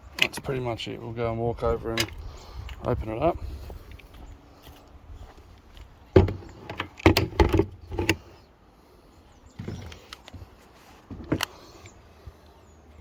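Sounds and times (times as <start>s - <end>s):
knocks and clunks from handling: 6.1s - 8.3s, 9.6s - 11.6s.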